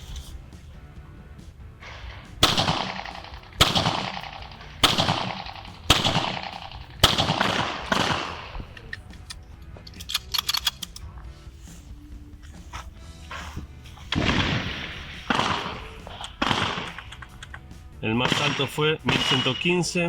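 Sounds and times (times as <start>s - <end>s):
pistol shots echoing: 1.9s - 8.9s, 14.1s - 17.3s, 18.1s - 20.0s.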